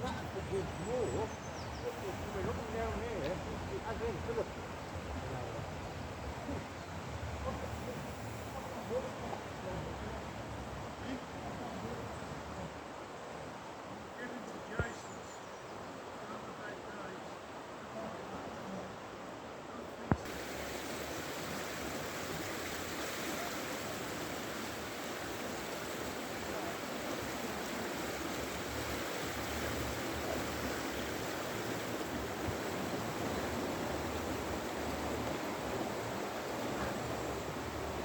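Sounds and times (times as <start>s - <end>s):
river water rushing: 0.0s - 14.8s, 15.8s - 38.0s.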